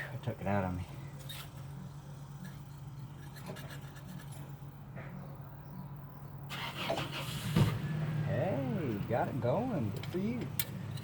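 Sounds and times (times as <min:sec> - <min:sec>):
low engine hum: 0:04.3 - 0:11.0.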